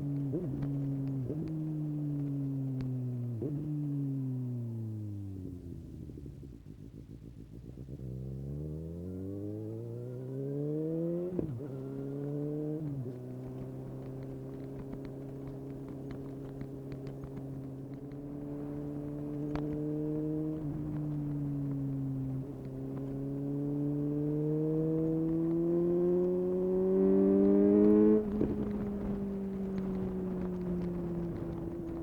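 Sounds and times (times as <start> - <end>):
light ticks: 0.0 - 3.5, 11.4 - 32.0
motorcycle engine revving and cruising: 0.0 - 32.0.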